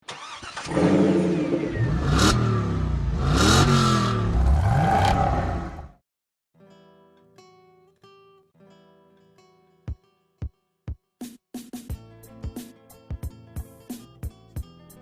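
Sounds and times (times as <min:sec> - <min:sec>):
car engine revving: 0:00.2 - 0:06.0.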